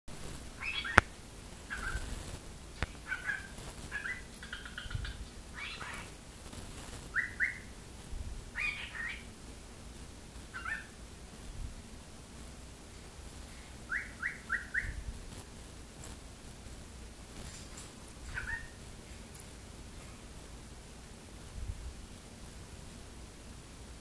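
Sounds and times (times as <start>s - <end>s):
cockatiel chirping and whistling: 0.6s - 1.1s, 1.7s - 2.1s, 3.0s - 6.2s, 7.1s - 7.7s, 8.6s - 9.3s, 10.5s - 11.0s, 13.9s - 15.1s, 18.3s - 18.8s.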